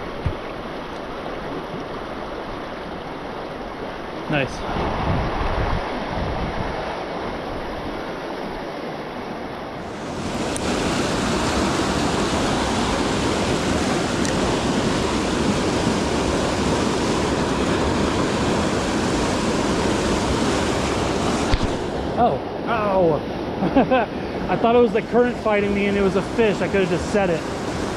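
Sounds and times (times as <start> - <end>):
rushing river water: 0.0 - 27.9.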